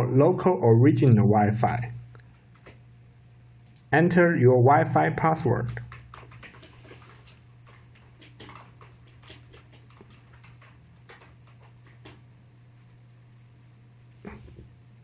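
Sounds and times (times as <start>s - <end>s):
steady low hum: 0.0s - 15.0s
fingers tapping phone screen: 5.8s - 12.3s.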